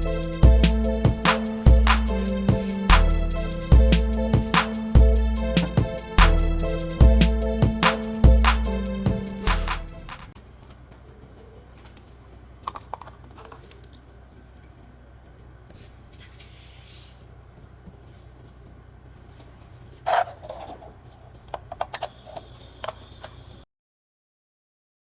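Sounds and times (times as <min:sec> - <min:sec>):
handling clicks and scrapes: 0:10.2 - 0:23.5
brief hiss: 0:15.7 - 0:17.3.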